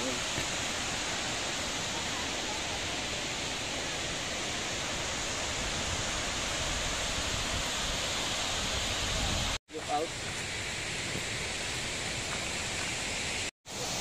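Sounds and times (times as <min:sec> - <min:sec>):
waterfall rushing: 0:00.0 - 0:14.0.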